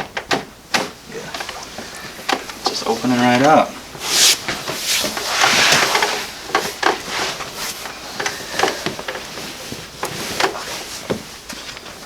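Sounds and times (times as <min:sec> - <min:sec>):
back joints cracking: 0:00.2 - 0:11.8
handling and table noise: 0:00.7 - 0:11.8.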